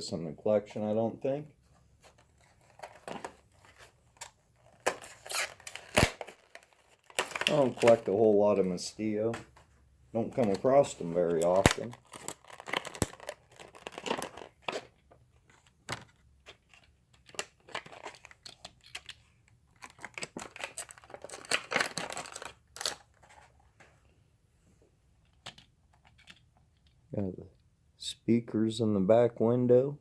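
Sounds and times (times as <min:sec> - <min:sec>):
plastic packaging crinkling and tearing: 0:04.6 - 0:08.3, 0:10.2 - 0:14.8, 0:19.7 - 0:23.2.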